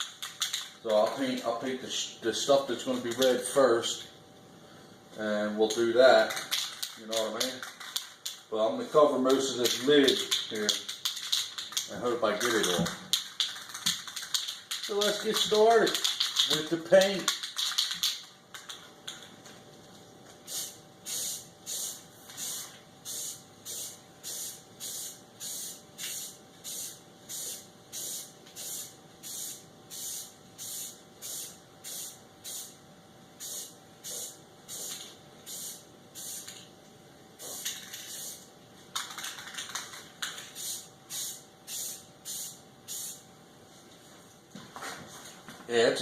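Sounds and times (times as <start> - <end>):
aerosol spray can hissing: 20.5 - 32.8, 33.4 - 36.6, 37.4 - 38.5, 40.6 - 43.2.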